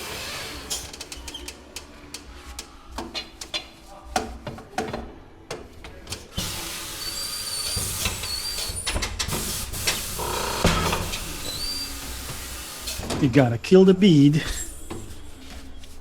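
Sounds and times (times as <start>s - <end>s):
air hissing from tire: 6.4s - 13.1s.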